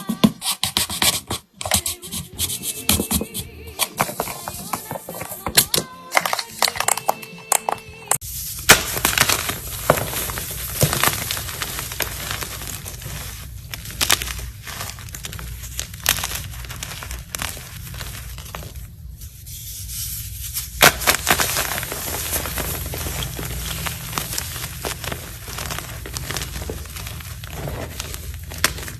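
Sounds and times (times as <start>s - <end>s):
brittle crunching and cracking: 8.6s - 19.1s, 20.7s - 28.9s.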